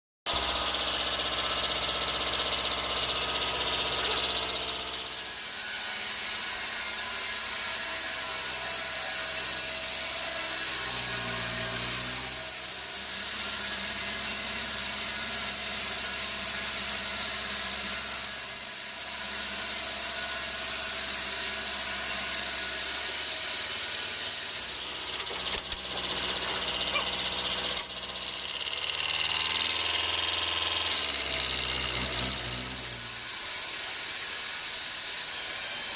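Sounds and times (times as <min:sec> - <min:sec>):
motor hum: 0:24.5 - 0:33.3.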